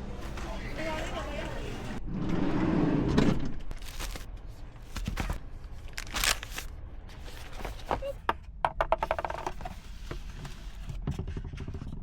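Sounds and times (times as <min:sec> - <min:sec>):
bag rustling and crinkling: 0:03.7 - 0:07.9.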